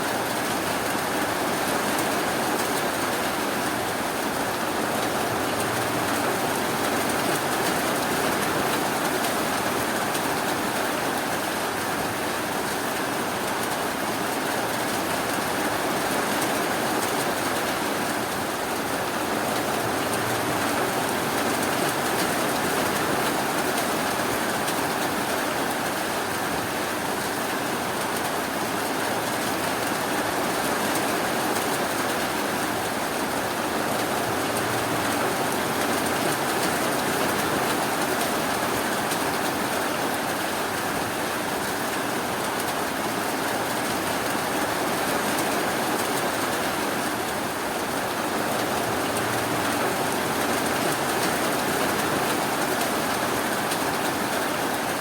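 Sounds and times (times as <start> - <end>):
steady rainfall: 0.0 - 55.0.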